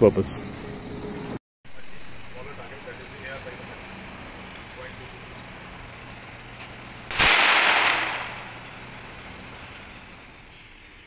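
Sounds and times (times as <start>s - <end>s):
pistol shot with echo: 7.1s - 8.5s.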